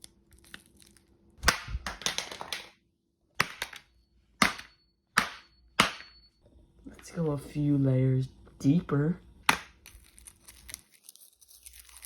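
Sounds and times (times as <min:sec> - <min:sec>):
plastic phone being smashed: 0:01.4 - 0:02.8, 0:03.4 - 0:06.0.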